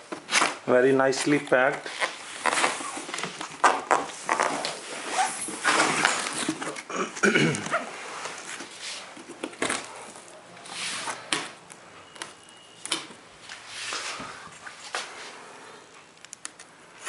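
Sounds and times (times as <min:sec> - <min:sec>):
cardboard rustling and scraping: 0:00.0 - 0:06.9, 0:07.8 - 0:11.5.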